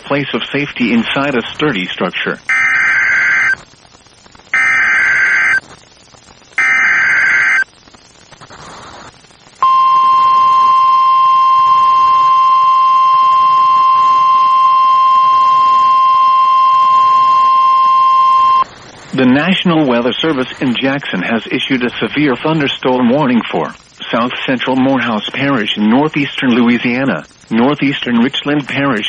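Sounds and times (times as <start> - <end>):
steady warning alarm tone: 2.5 - 3.6, 4.6 - 5.6, 6.6 - 7.6, 9.6 - 18.6
buzzing digital data tones: 2.5 - 3.7, 4.4 - 5.7, 6.4 - 7.7.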